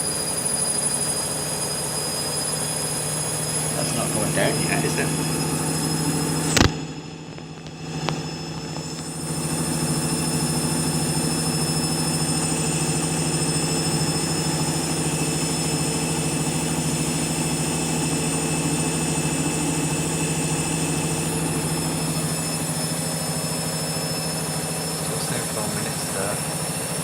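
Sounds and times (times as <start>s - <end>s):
washing machine spinning: 0.0s - 27.0s.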